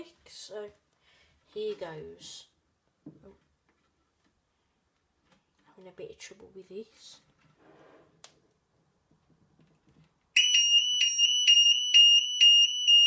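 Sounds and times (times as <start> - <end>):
shrill pulsing alarm tone: 10.4 - 13.0.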